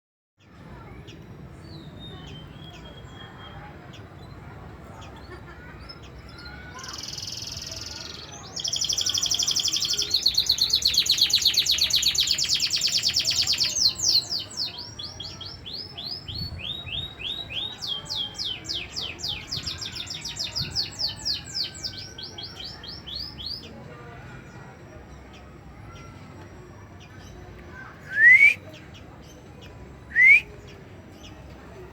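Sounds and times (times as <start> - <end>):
canary singing trills: 0.7 - 23.8.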